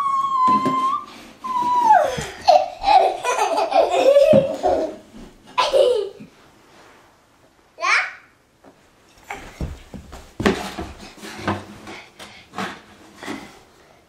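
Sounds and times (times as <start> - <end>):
toddler laughing and giggling: 1.7 - 6.3.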